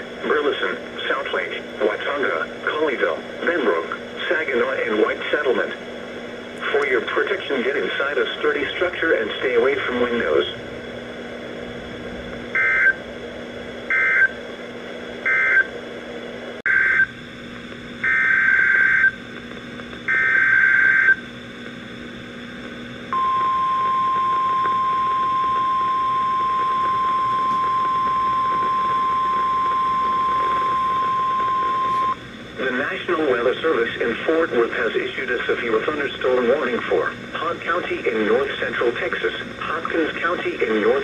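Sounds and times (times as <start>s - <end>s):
receiver hiss: 0.0s - 41.0s
steady warning alarm tone: 12.5s - 13.0s, 13.9s - 14.4s, 15.2s - 15.8s, 16.7s - 17.2s, 18.0s - 19.2s, 20.0s - 21.3s, 23.1s - 32.3s.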